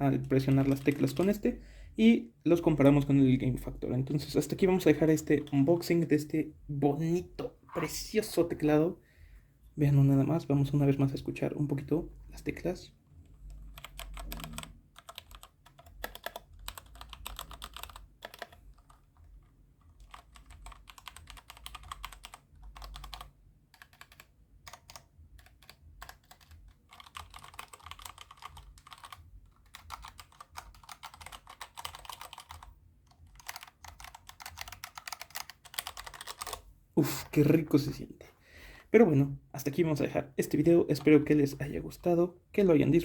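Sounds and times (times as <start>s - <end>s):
mechanical keyboard typing: 0.2s - 1.4s, 13.3s - 36.6s.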